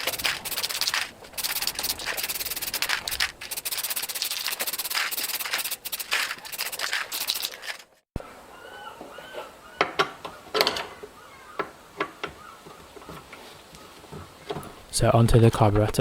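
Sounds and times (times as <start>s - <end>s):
wire brush scrubbing metal: 0.0s - 7.8s.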